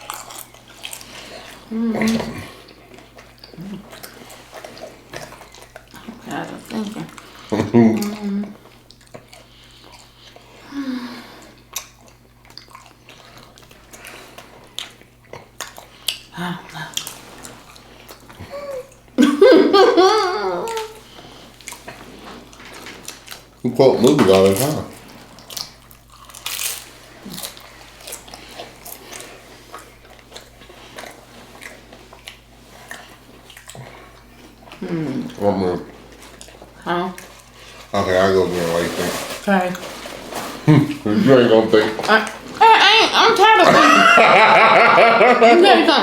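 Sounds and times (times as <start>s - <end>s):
person chewing food: 0.0s - 10.7s, 11.3s - 19.2s, 20.6s - 23.6s, 24.3s - 38.0s.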